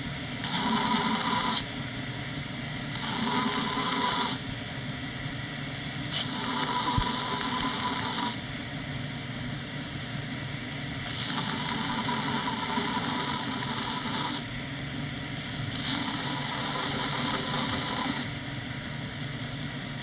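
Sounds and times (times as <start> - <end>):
grinder running: 0.0 - 1.8, 2.9 - 4.4, 6.1 - 8.4, 11.0 - 14.6, 15.7 - 18.4
loud rasping grinding hiss: 0.4 - 1.7, 2.9 - 4.4, 6.1 - 8.4, 11.0 - 14.5, 15.7 - 18.3.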